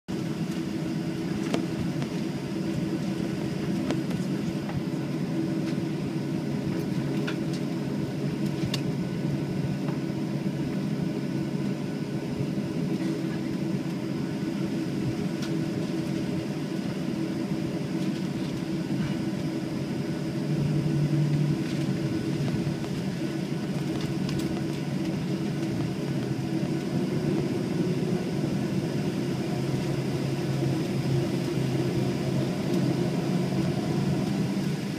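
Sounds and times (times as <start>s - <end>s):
airplane cabin hum: 0.1s - 34.9s.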